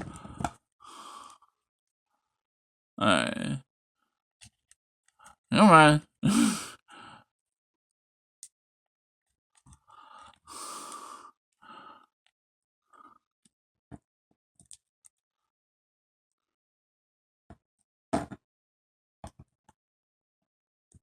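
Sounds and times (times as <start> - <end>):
breathy sigh: 6.2 - 7.2.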